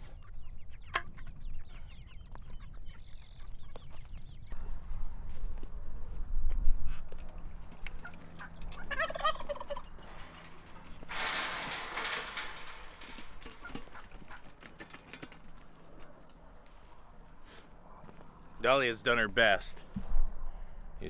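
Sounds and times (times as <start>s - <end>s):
turkey gobbling: 7.9s - 10.0s.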